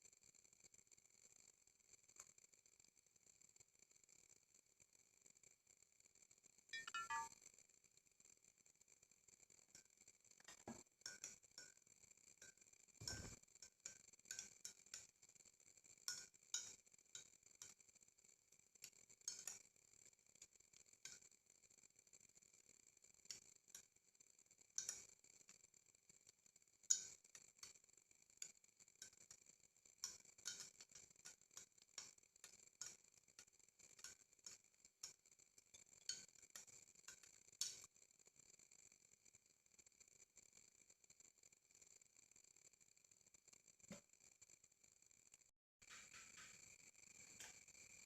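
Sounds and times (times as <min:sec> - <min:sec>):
metal spoon clinking in glass: 0:06.8 - 0:07.3, 0:12.4 - 0:15.1, 0:30.0 - 0:33.0.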